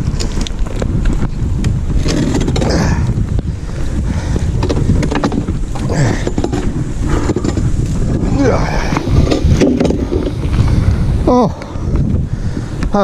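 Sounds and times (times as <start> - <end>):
wind buffeting microphone: 0.0 - 13.0
metal sign knocking and scraping: 2.0 - 2.9, 4.6 - 10.5.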